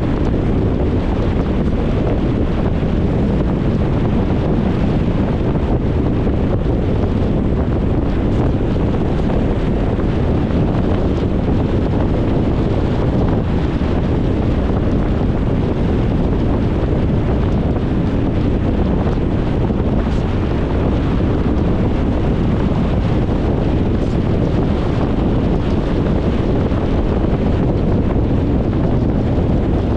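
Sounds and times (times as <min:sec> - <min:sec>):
car road noise: 0:00.0 - 0:29.9.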